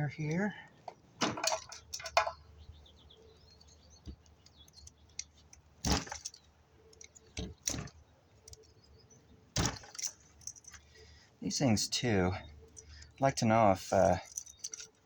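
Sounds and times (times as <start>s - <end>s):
tools and scrap parts clattering: 0.9s - 2.5s, 9.6s - 11.0s, 14.0s - 15.0s
faint bird chirps: 2.2s - 5.5s.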